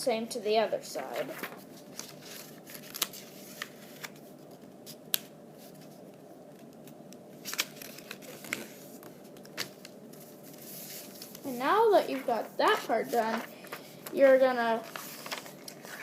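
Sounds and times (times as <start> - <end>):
paper being folded: 1.0 - 5.0, 7.4 - 16.0.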